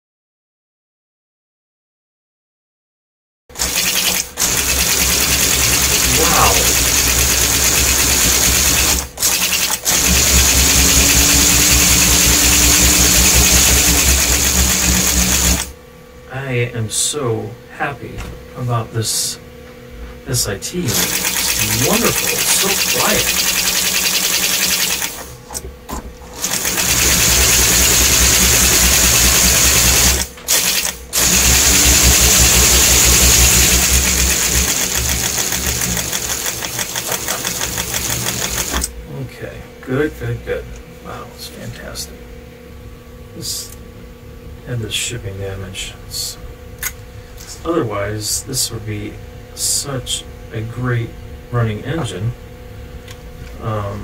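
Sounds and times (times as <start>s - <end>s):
toy train motor whirring: 3.6s - 15.7s, 20.9s - 25.3s, 26.3s - 38.9s.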